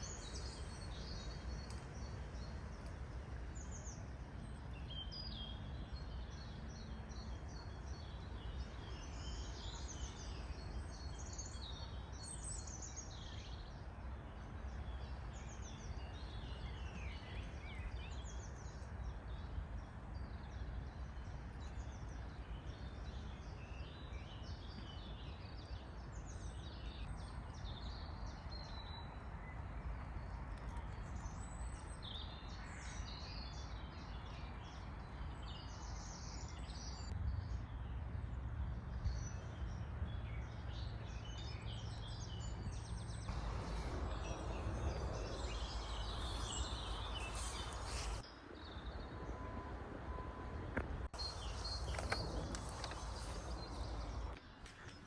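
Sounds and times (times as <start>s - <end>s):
low background rumble: 35.6s - 54.4s
birds chirping and trilling: 39.1s - 49.4s, 51.2s - 55.0s.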